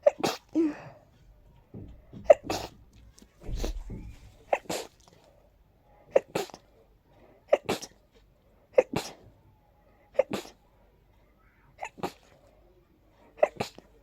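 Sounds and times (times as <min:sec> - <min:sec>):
person sneezing: 0:02.3 - 0:02.8, 0:04.5 - 0:05.0, 0:06.1 - 0:06.6, 0:07.5 - 0:08.0, 0:08.8 - 0:09.3, 0:10.2 - 0:10.6, 0:11.8 - 0:12.4, 0:13.4 - 0:14.0.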